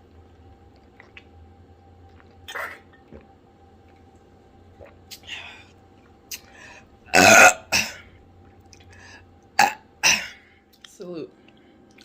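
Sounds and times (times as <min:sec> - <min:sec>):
loud burp: 0:07.1 - 0:08.0, 0:09.6 - 0:10.4.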